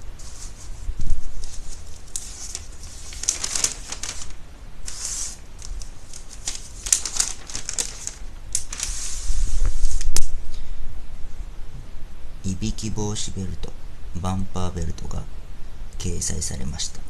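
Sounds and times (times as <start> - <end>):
soft rustling and crinkling: 0.0 - 10.4.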